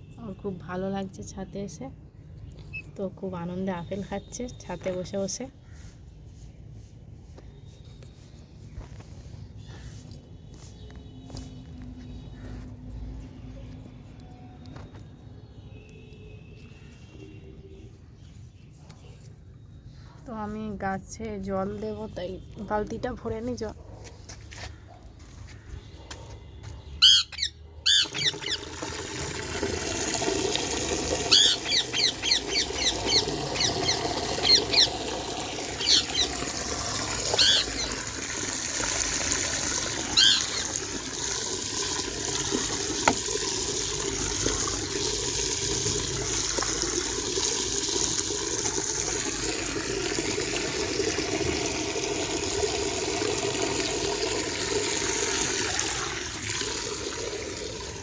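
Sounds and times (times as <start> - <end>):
tap water filling bucket: 27.9 - 58.0
bird chirping: 31.3 - 35.0, 35.8 - 36.4, 37.4 - 37.9.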